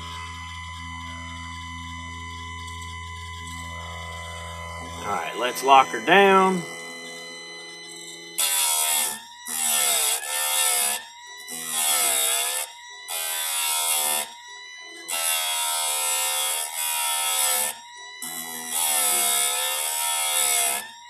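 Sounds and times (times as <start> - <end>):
motor whine: 0.0 - 16.8
chain sharpener grinding: 2.8 - 14.3, 15.0 - 20.9.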